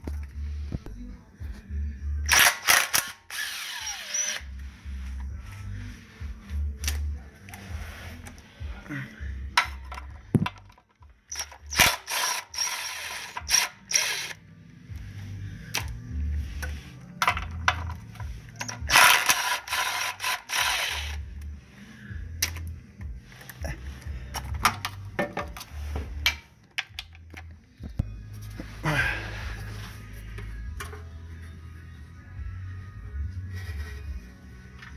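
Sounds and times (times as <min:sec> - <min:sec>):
ratchet wrench clicking: 0:02.3 - 0:04.6, 0:11.3 - 0:14.4, 0:16.6 - 0:21.3.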